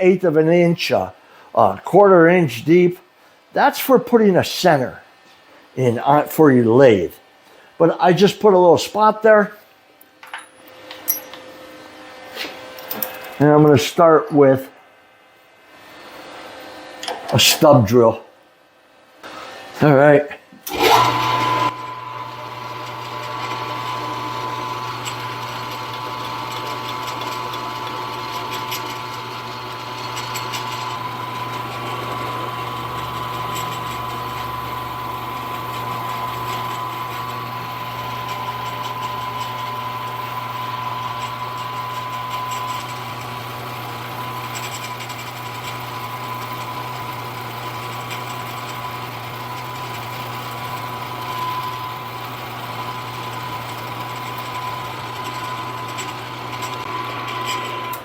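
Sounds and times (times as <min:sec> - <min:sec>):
milling machine whining: 0:19.4 - 0:58.0
drill drilling metal part: 0:20.6 - 0:58.0.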